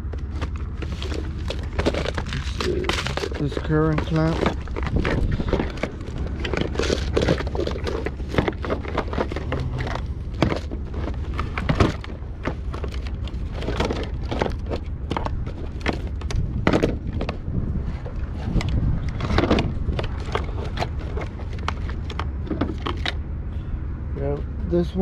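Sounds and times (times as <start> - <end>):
wires clicking and clattering: 0.0 - 17.4
steady low rumble: 0.0 - 25.0.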